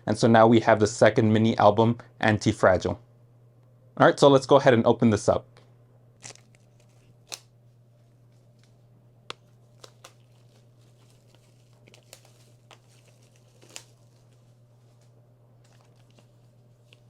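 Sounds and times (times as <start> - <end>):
steady low hum: 0.0 - 17.0
packaging rustling and clicking: 6.2 - 7.5, 8.4 - 17.0.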